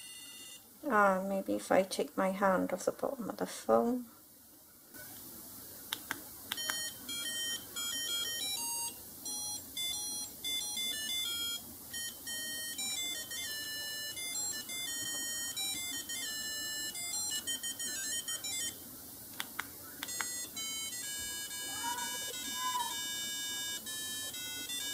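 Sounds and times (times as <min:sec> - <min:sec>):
high-pitched electronic ringtone: 0:00.0 - 0:00.6, 0:06.6 - 0:18.8, 0:20.1 - 0:24.9
phone clicks: 0:06.0 - 0:06.9, 0:19.4 - 0:20.4.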